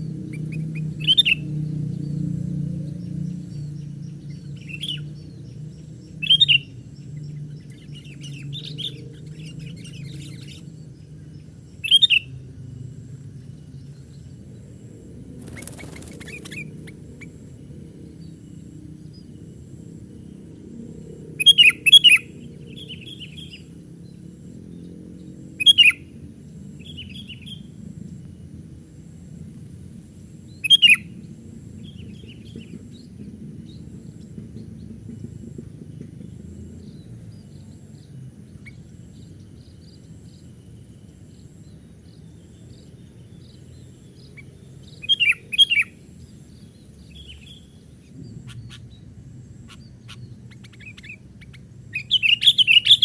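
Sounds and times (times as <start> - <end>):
sharp bird calls: 0.0 - 2.0, 3.0 - 19.3, 21.4 - 23.8, 25.5 - 27.9, 30.4 - 40.6, 41.2 - 53.0
low background rumble: 0.0 - 53.0
soft bird chattering: 15.4 - 17.5, 49.6 - 53.0.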